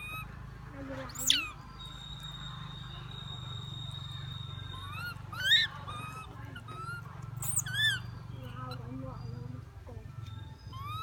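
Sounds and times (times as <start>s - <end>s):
monkey squealing: 0.0s - 0.3s, 1.1s - 9.0s, 10.6s - 11.0s.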